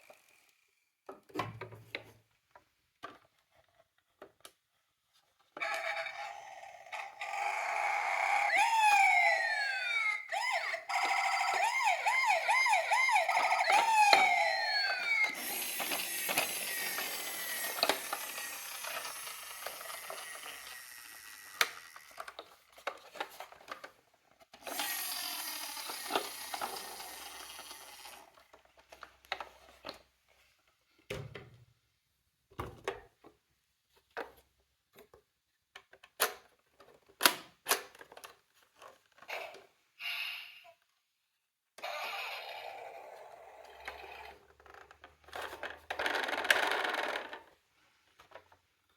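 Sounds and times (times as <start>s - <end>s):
toy electronic sirens wailing: 5.6s - 22.3s, 24.6s - 28.2s, 41.8s - 44.4s
toy cars rolling down slope: 5.6s - 29.9s, 41.8s - 47.6s
plastic toy clicks and knocks: 10.9s - 30.0s, 35.0s - 39.6s, 43.8s - 47.6s.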